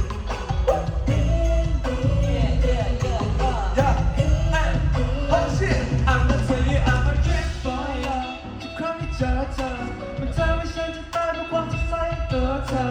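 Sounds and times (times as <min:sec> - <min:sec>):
live pop band with heavy bass: 0:00.0 - 0:12.9
men singing: 0:00.0 - 0:12.9.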